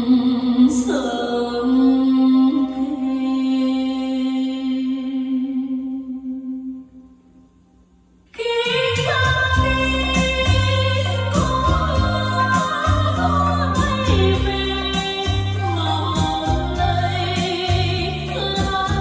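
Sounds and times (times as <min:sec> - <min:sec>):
woman singing song: 0:00.0 - 0:07.2, 0:08.3 - 0:19.0
bass line: 0:08.8 - 0:19.0.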